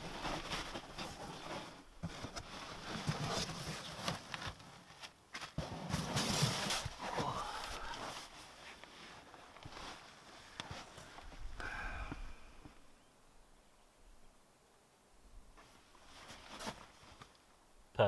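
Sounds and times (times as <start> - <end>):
ground sheet rustling and crinkling: 0.0 - 11.6, 15.5 - 17.5
light knocks and shuffles: 0.0 - 11.6, 15.5 - 17.4.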